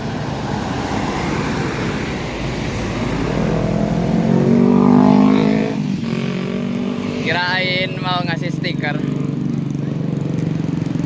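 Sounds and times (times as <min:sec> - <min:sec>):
bus passing close by: 0:00.0 - 0:07.0.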